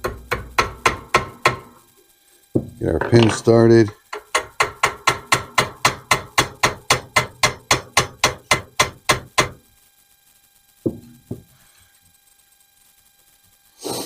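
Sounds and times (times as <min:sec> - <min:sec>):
knocks: 0:02.6 - 0:03.5, 0:10.8 - 0:11.5.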